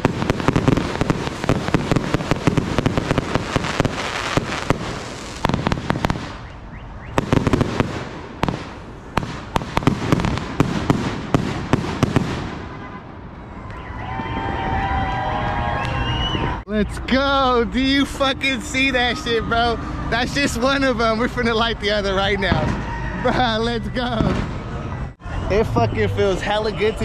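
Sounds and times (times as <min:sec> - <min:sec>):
fireworks bangs and crackling: 0:00.0 - 0:06.5, 0:07.1 - 0:13.0, 0:18.4 - 0:23.0, 0:23.8 - 0:24.7.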